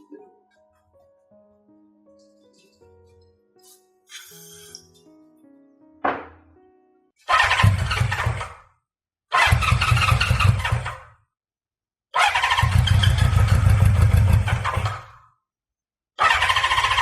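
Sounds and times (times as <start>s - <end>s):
motorcycle engine cranking: 7.3s - 8.6s, 9.4s - 11.0s, 12.2s - 15.2s, 16.2s - 17.0s.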